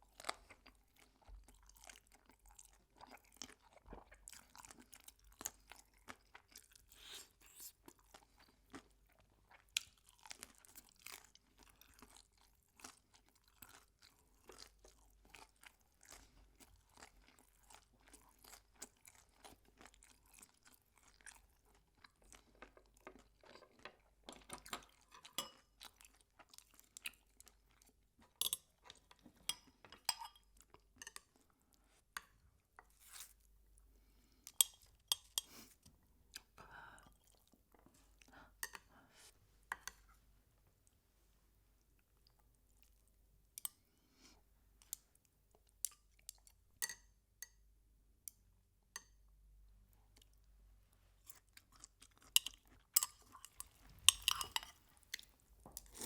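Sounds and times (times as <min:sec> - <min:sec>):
crunching and chewing fried chicken: 0:00.0 - 0:31.9, 0:50.0 - 0:56.0.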